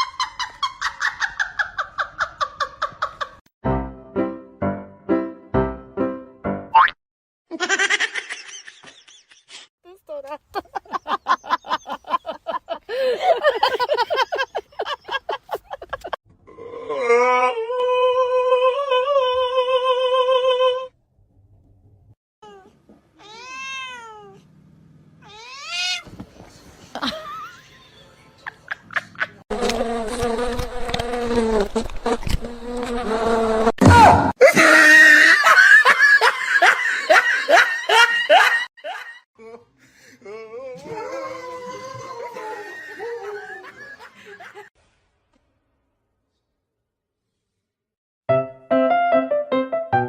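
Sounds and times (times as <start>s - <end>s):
cats meowing and yowling: 22.4s - 24.4s, 25.2s - 26.1s.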